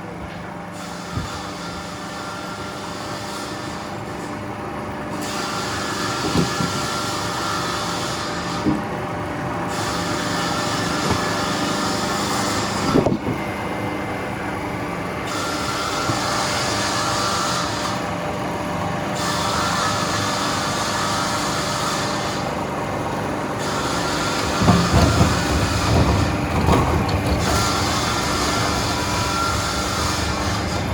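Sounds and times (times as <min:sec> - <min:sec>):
veneer peeling machinery humming: 0:00.0 - 0:30.9
sharp knocks: 0:24.5 - 0:28.6.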